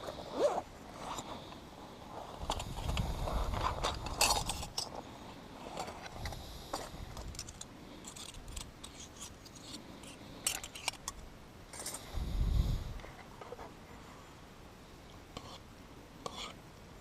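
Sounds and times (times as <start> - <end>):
small objects clicking and snipping: 7.1 - 12.0.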